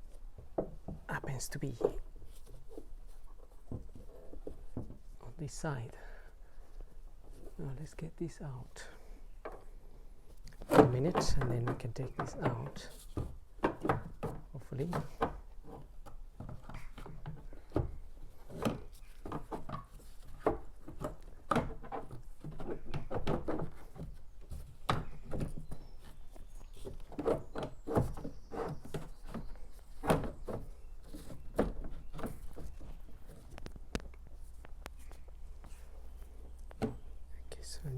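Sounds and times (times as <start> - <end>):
hard plastic knocks and clicks: 10.5 - 26.1, 36.6 - 37.2.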